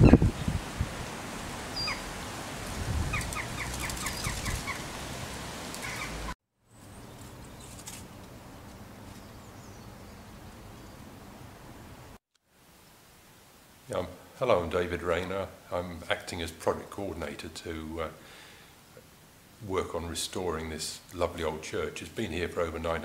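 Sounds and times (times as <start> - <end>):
birds chirping: 1.7 - 2.2, 3.1 - 5.0, 5.8 - 11.6
steady hiss: 10.4 - 23.0.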